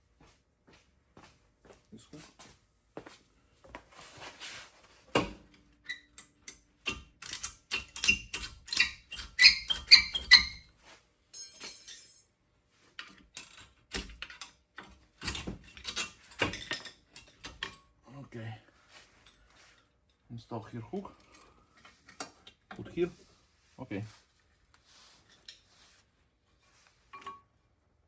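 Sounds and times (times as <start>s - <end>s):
metallic clinks and knocks: 5.2s - 10.6s, 11.3s - 12.3s, 15.2s - 17.9s.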